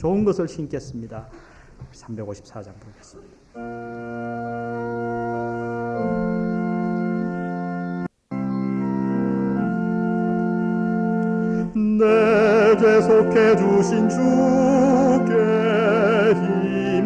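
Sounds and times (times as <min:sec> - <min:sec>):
organ playing held chords: 0:03.6 - 0:17.0.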